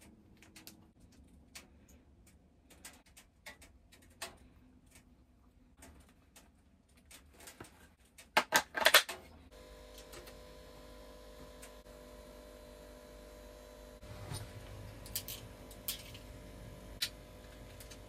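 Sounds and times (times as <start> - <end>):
steady hum: 9.3 - 18.0.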